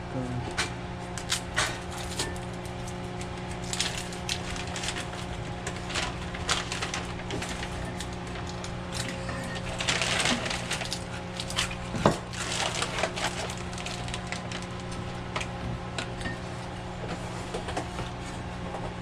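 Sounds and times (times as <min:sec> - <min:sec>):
steady kitchen hum: 0:00.0 - 0:19.0
onion skin crackling: 0:01.2 - 0:15.0.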